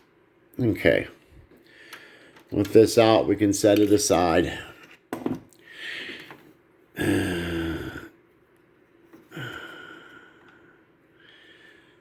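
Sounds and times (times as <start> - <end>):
man grunting: 7.0 - 8.1
man exhaling breathily: 7.0 - 8.2, 9.3 - 12.0.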